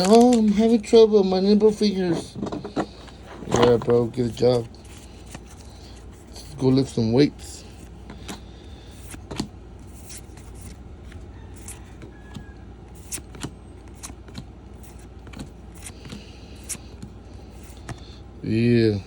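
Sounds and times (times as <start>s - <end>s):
steady low hum: 0.0s - 19.0s
cards snapping and flicking: 12.9s - 18.0s.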